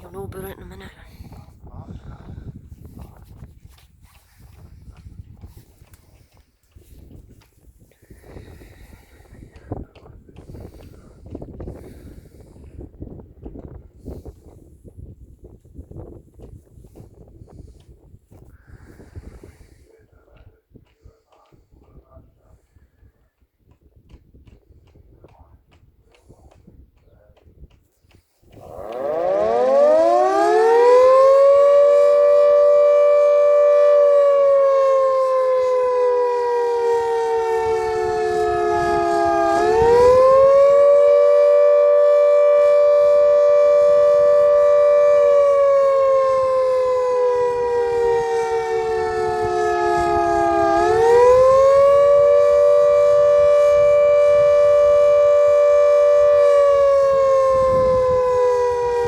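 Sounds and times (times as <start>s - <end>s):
air-raid siren wailing: 28.5s - 59.0s.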